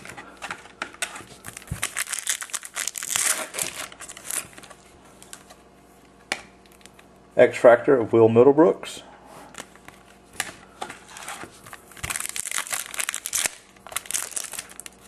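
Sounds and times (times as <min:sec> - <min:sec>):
foil wrapper crinkling: 0:01.4 - 0:05.5, 0:11.1 - 0:15.0.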